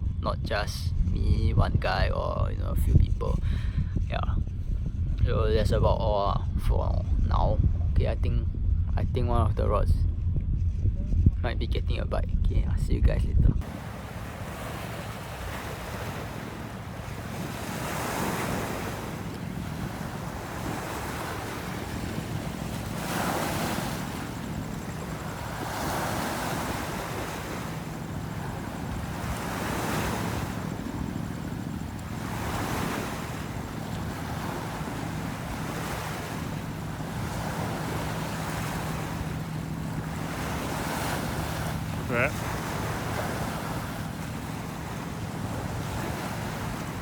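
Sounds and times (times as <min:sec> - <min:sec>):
steady low hum: 0:00.0 - 0:47.0
wind gusting across microphone: 0:00.0 - 0:47.0.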